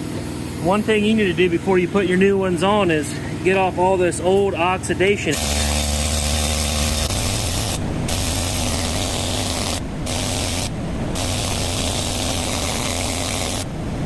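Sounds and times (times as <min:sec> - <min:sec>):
power tool motor hum: 0:05.3 - 0:14.0
hissing scrub on metal: 0:05.4 - 0:13.8.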